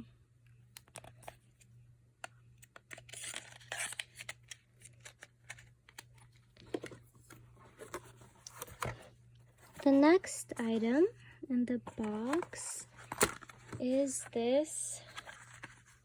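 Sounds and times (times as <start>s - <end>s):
packaging rustling: 11.9s - 14.0s.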